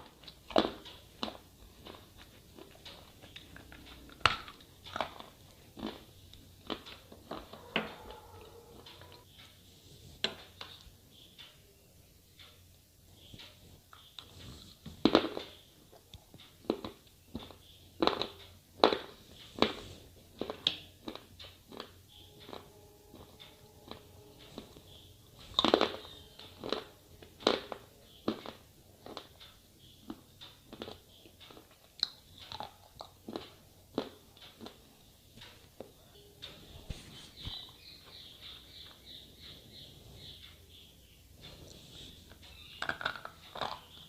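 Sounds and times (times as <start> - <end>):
slate pencils cracking and crunching: 0.0 - 9.2, 15.0 - 35.8, 42.4 - 44.0
grinding chews: 0.0 - 9.3, 16.5 - 35.8.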